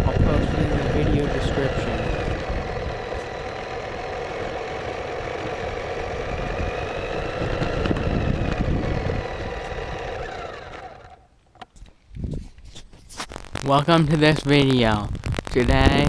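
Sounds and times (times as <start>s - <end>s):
electric motor whine: 0.0s - 11.3s
tyre and drivetrain rumble: 0.0s - 12.4s.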